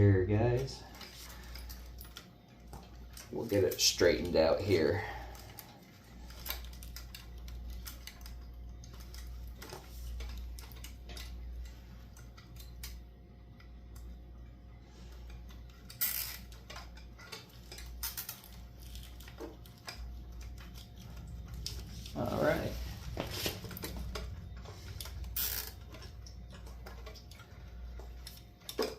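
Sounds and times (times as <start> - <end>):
steady low hum: 0.0 - 28.9
small clicks of hands working fittings: 15.3 - 21.8, 24.2 - 28.9.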